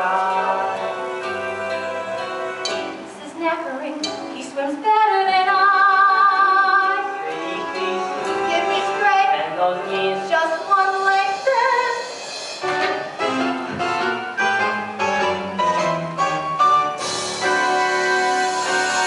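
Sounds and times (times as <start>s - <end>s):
instrumental accompaniment: 0.0s - 19.0s
woman singing: 3.2s - 7.3s, 8.2s - 12.1s.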